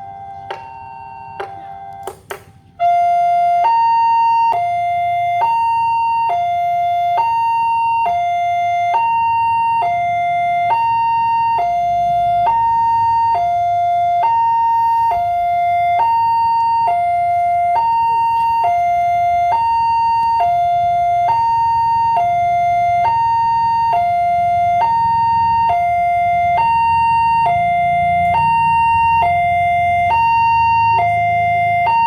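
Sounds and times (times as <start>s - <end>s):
two-tone crossing alarm: 0.0s - 32.0s
clicking tone: 0.1s - 2.2s.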